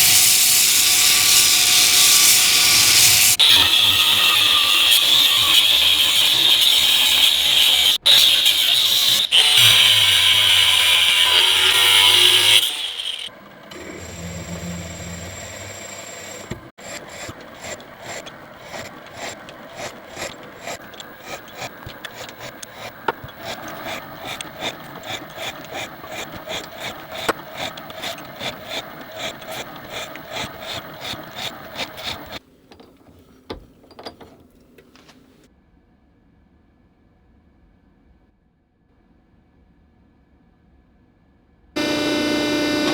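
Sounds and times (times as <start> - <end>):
hand filing strokes: 0.0 - 13.3, 14.0 - 32.4
loud power tool running: 0.0 - 32.4, 41.8 - 42.9.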